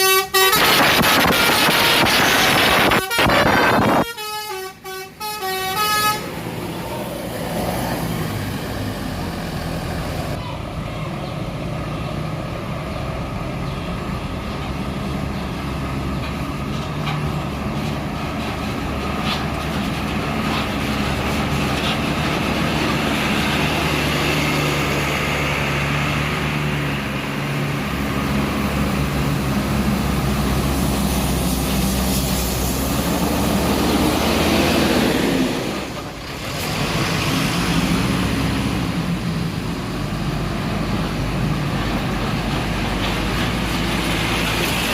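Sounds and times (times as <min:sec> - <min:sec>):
diesel bus engine drone: 0:00.0 - 0:44.9.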